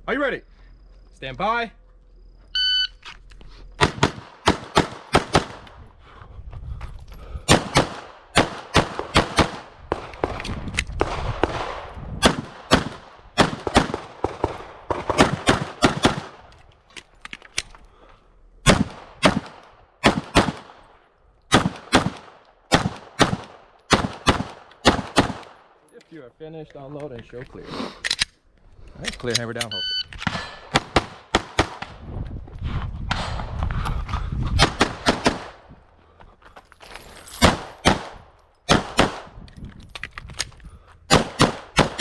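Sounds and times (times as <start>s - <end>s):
pistol firing rapid shots: 3.8s - 5.6s, 7.5s - 10.4s, 11.0s - 16.4s, 18.7s - 20.8s, 21.5s - 25.6s, 30.7s - 31.9s, 34.6s - 35.6s, 37.4s - 39.3s, 41.1s - 42.0s.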